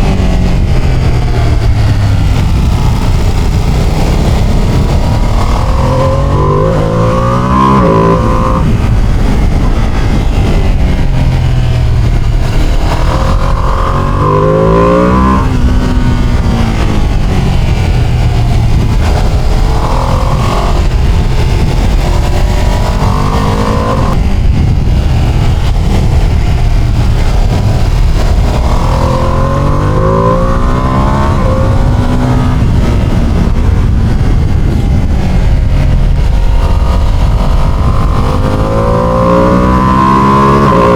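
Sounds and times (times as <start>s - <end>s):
motorcycle engine accelerating: 0.0s - 40.9s.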